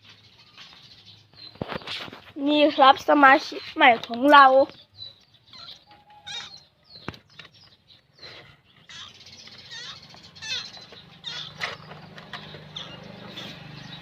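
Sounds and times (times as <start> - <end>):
high wavering animal calls: 5.4 - 6.8, 8.2 - 12.0, 12.6 - 13.6.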